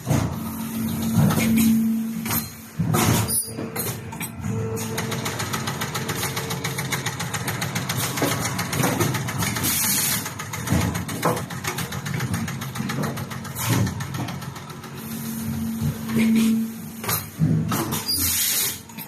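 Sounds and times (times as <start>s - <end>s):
machine rattling: 0.0s - 16.2s
heavy machine thumps: 10.6s - 11.6s.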